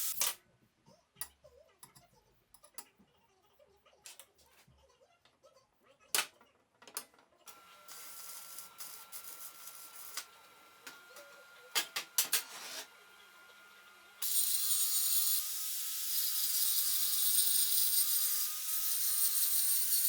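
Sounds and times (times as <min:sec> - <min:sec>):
small power tool whining: 0:07.5 - 0:20.0.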